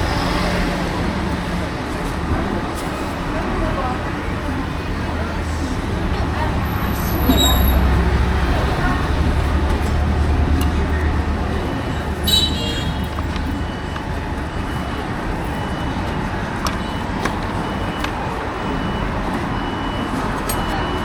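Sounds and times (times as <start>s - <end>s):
traffic noise: 0.0s - 21.0s
faint high beep: 6.7s - 8.1s
high squeal: 6.7s - 8.1s.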